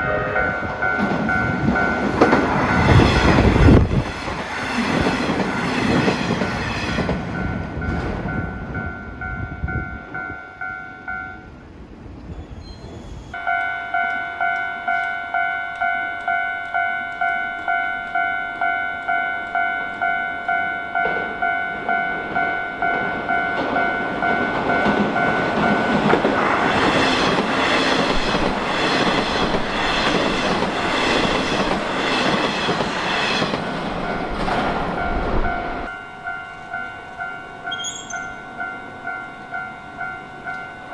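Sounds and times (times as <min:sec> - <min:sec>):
level crossing warning bell: 0:00.0 - 0:03.8, 0:07.4 - 0:11.6, 0:13.4 - 0:32.9, 0:34.0 - 0:40.9
train wheel clacks: 0:00.0 - 0:08.5, 0:13.4 - 0:35.8
electric train rushing past: 0:00.0 - 0:16.4, 0:17.2 - 0:40.9.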